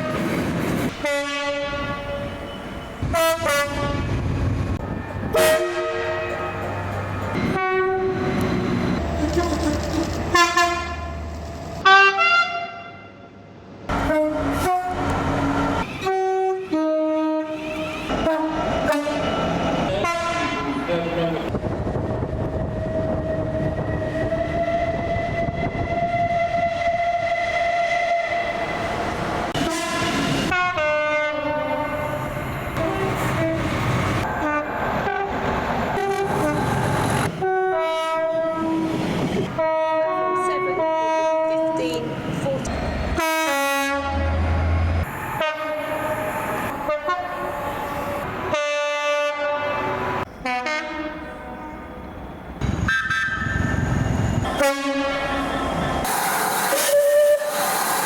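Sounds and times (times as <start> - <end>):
rumble of moving trains: 0.0 - 58.0
long steady train horn: 0.9 - 4.2, 5.3 - 6.6, 7.4 - 21.5, 22.8 - 28.7, 29.5 - 33.8, 34.4 - 35.4, 36.0 - 36.8, 37.4 - 39.0, 39.6 - 42.2, 43.2 - 52.1, 54.4 - 58.0
two-tone train horn blasts: 1.0 - 4.2, 5.3 - 6.6, 7.4 - 13.3, 13.9 - 21.5, 22.9 - 28.6, 29.6 - 33.8, 37.4 - 38.9, 39.6 - 42.0, 43.2 - 47.6, 48.5 - 51.8, 54.4 - 56.1, 56.7 - 57.6.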